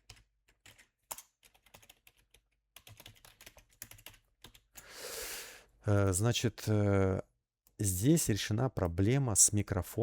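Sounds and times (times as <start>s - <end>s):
faint keyboard typing: 0.0s - 4.9s.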